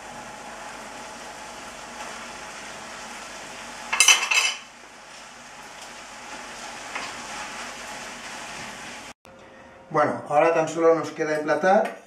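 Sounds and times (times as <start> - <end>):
spaghetti sizzling in a frying pan: 0.0 - 9.2.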